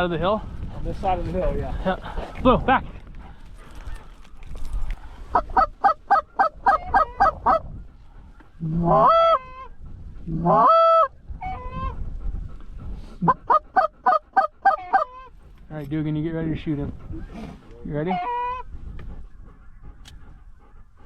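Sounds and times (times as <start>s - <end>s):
goose honking: 13.5s - 15.3s, 18.1s - 18.6s.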